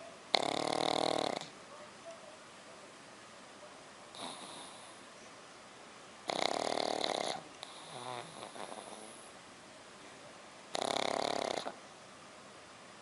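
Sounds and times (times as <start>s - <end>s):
puppy snoring: 0.3s - 1.6s, 4.1s - 5.1s, 6.2s - 9.3s, 10.7s - 11.8s.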